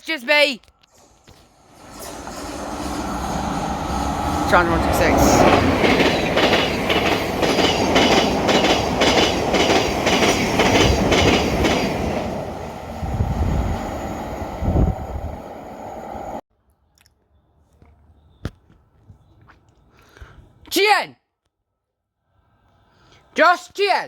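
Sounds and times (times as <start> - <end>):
train wheels clacking over rails: 1.3 - 14.2
low train rumble: 1.5 - 16.4.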